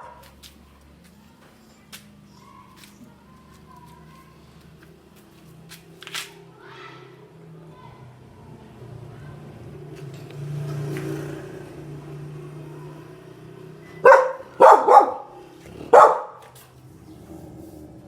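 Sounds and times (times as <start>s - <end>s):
dog barking loudly: 0.0s - 0.3s, 14.0s - 16.6s.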